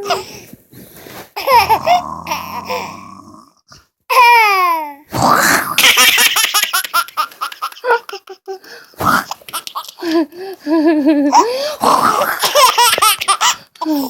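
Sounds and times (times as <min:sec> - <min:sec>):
baby laughing: 0:01.4 - 0:02.9, 0:05.8 - 0:14.0.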